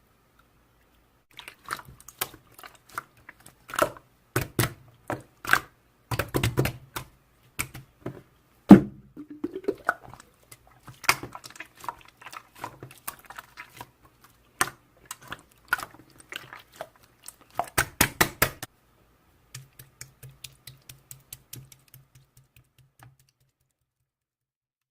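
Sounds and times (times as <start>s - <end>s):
loud thump: 8.7s - 9.1s
irregular clicking and tapping: 19.5s - 23.8s.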